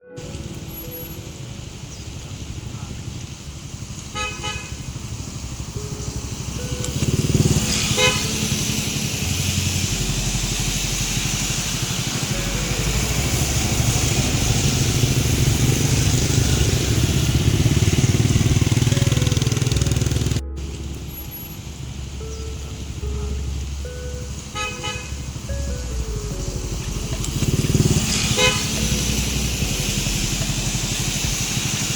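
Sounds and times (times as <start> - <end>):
vehicle engines running: 0.0 - 31.9
rain hissing: 0.1 - 31.9
car horn toot: 4.1 - 5.0, 7.4 - 8.8, 22.2 - 26.1, 27.8 - 29.4.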